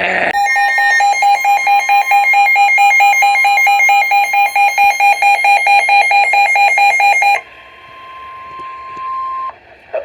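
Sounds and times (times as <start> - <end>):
steady alert tone: 0.3 - 7.4
alarm rapid pulsing beeps: 0.4 - 7.4.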